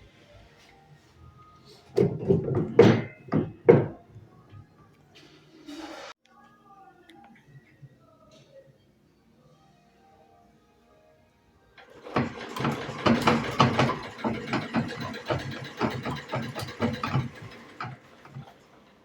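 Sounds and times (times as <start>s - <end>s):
sewing machine clattering: 11.8s - 19.0s.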